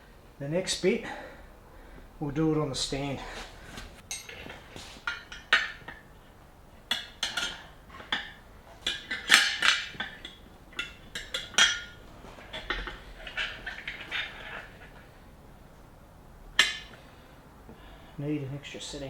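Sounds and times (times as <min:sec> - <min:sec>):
metal tyre levers clanking on rim: 0:04.1 - 0:06.1, 0:06.9 - 0:15.2, 0:16.5 - 0:17.2.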